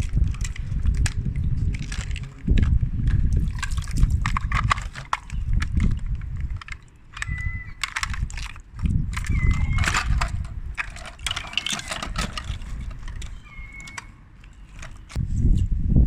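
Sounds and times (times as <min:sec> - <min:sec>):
low rumbling handling noise: 0:00.0 - 0:16.0
ice cubes clinking: 0:00.3 - 0:15.2
short squeak: 0:09.2 - 0:10.2, 0:13.1 - 0:15.1.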